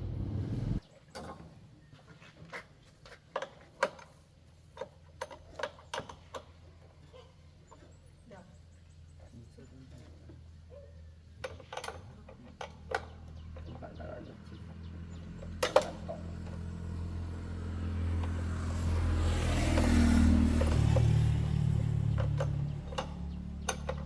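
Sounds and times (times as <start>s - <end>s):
motorcycle engine running: 0.0s - 0.8s, 14.6s - 24.0s
sharp clicks and knocks: 22.0s - 24.0s.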